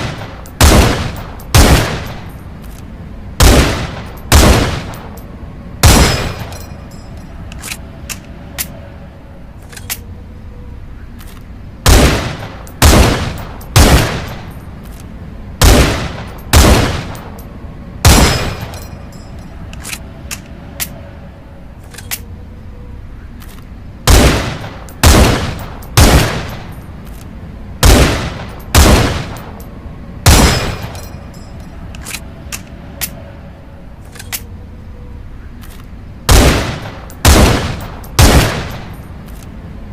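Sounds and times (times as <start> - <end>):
rifle shots: 0.0 - 2.2, 3.4 - 5.1, 5.8 - 6.5, 11.8 - 14.5, 15.6 - 17.3, 18.0 - 18.7, 24.1 - 26.7, 27.8 - 29.6, 30.2 - 31.0, 36.3 - 38.9.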